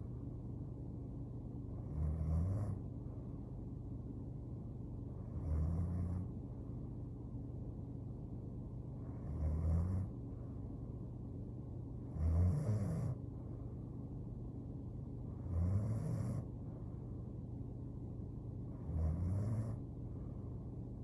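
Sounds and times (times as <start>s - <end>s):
steady low hum: 0.0s - 21.0s
woman snoring: 1.9s - 2.8s, 9.2s - 10.1s, 12.2s - 13.2s, 15.5s - 16.4s, 18.9s - 19.8s.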